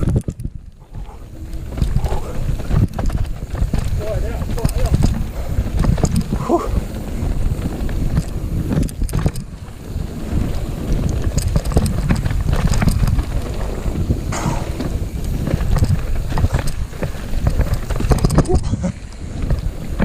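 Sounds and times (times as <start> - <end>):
bike tyre noise: 0.0 - 20.0
wind buffeting microphone: 0.0 - 20.0
bike clattering over ground: 1.4 - 20.0.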